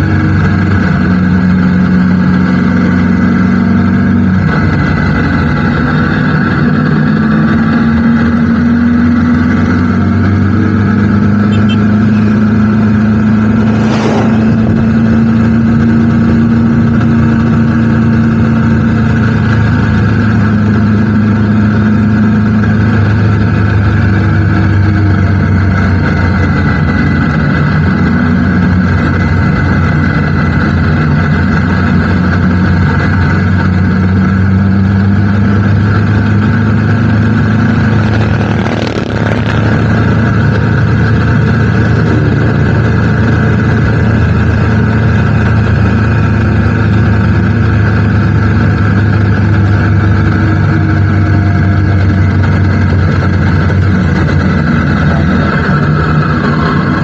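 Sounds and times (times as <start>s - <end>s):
motorcycle engine running: 0.0s - 57.0s
short rush of noise: 13.2s - 15.2s.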